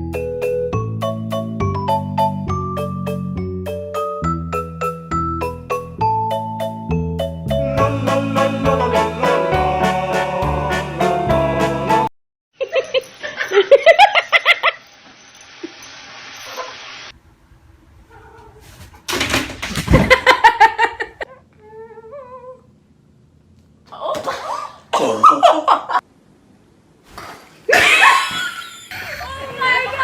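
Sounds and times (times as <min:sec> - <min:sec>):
people laughing: 0:12.6 - 0:14.8, 0:27.7 - 0:30.0
people talking: 0:29.0 - 0:30.0.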